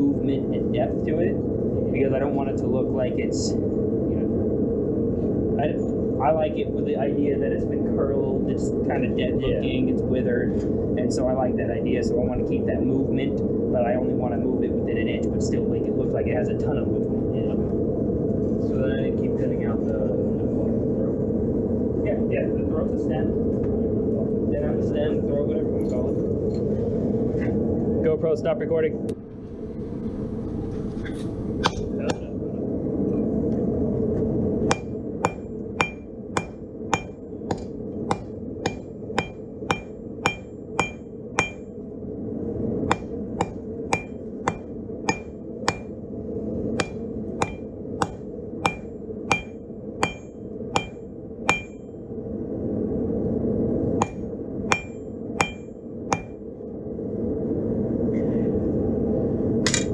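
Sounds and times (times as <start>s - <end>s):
low rushing noise: 29.0s - 58.0s
hammer striking steel on anvil: 31.6s - 32.3s, 34.7s - 41.7s, 42.9s - 46.0s, 46.8s - 51.9s, 54.0s - 56.4s, 59.7s - 59.9s.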